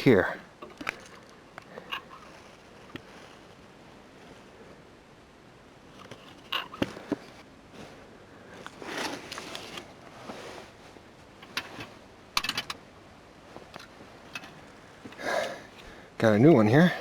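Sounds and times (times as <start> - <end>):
plastic and metal parts clicking: 0.6 - 3.1, 6.0 - 7.4, 11.4 - 12.8, 13.6 - 15.9
short rustle: 0.6 - 4.7, 5.9 - 16.1.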